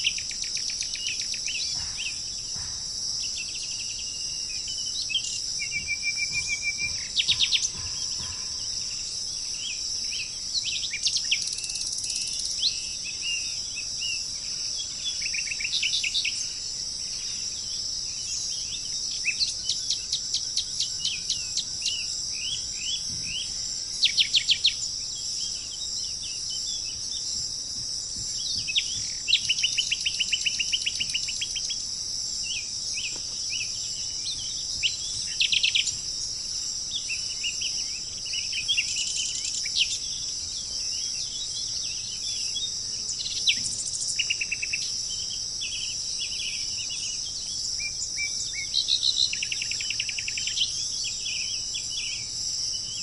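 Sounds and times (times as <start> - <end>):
high-pitched insect chorus: 0.0 - 53.0
wild birds calling: 0.0 - 53.0.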